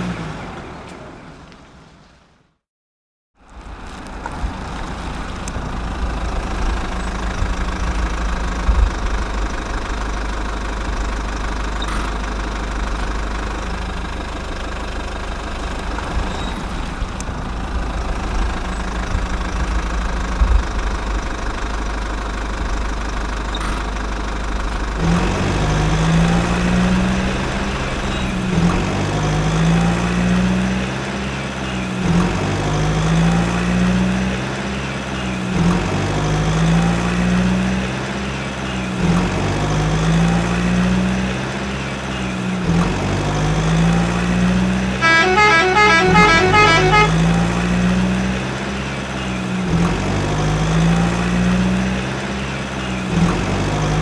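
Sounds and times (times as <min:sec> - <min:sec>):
low engine rumble: 0:03.4 - 0:32.0, 0:45.0 - 0:47.8.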